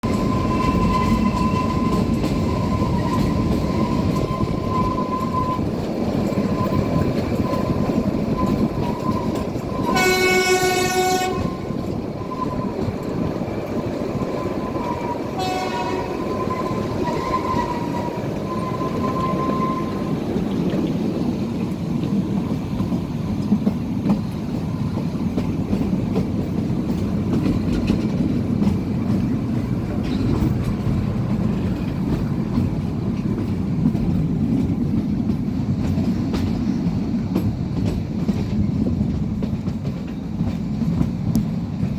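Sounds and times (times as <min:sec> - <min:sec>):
train carriages rumbling: 0:00.0 - 0:41.9
train horn: 0:09.0 - 0:12.7, 0:14.8 - 0:20.2.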